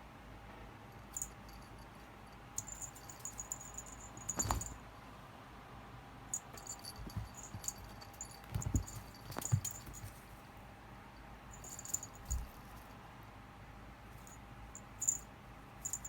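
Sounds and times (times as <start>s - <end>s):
toy jingling: 2.6s - 4.8s, 6.4s - 10.2s, 11.5s - 12.7s, 14.2s - 15.2s
soft thumps: 4.2s - 4.8s, 6.6s - 10.2s.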